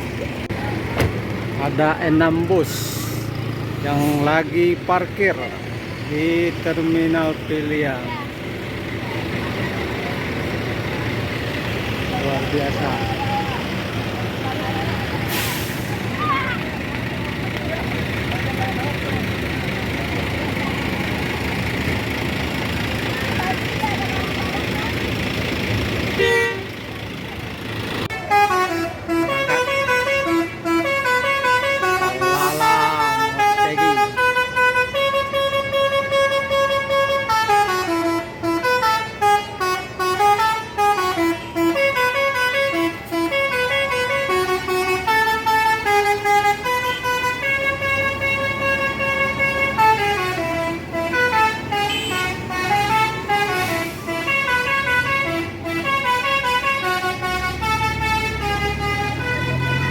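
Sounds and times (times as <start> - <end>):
bus horn playing a tune: 12.2 - 16.3, 26.0 - 27.0, 28.0 - 59.9.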